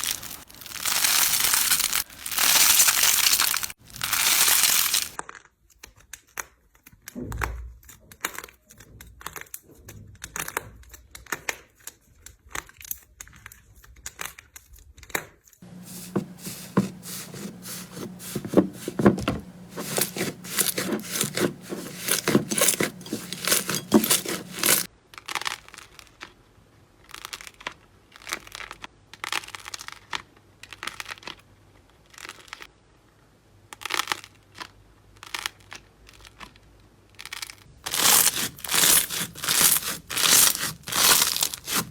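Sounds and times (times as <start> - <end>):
slime crackling and crunching: 37.9 - 41.9.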